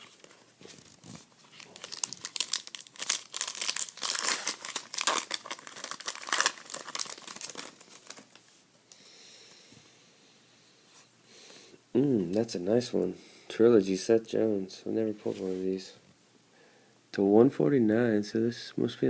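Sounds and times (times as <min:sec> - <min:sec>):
wrapper being torn and crinkled: 0:00.0 - 0:08.4.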